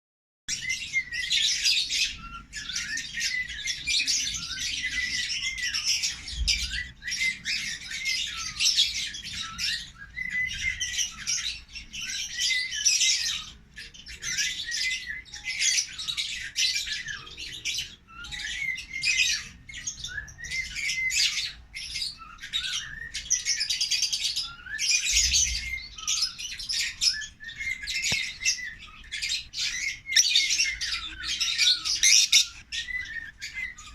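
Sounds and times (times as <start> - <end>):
lovebirds chirping: 0.5 - 33.9.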